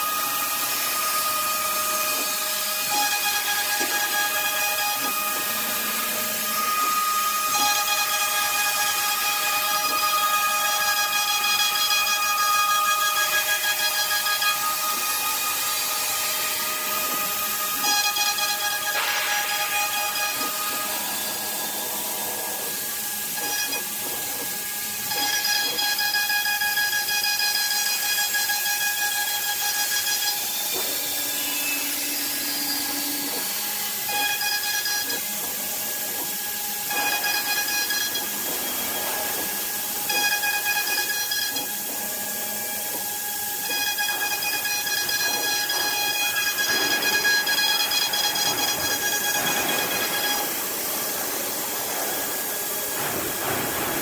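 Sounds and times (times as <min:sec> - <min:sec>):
router spindle whine: 0:00.0 - 0:54.0
hissing cutting noise: 0:41.0 - 0:54.0.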